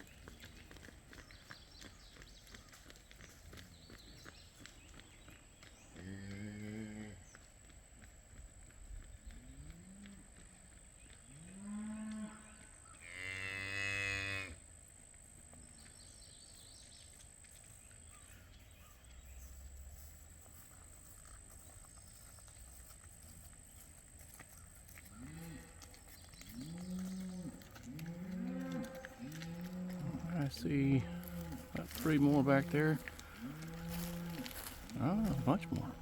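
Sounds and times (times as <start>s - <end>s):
cattle mooing: 26.6s - 36.0s.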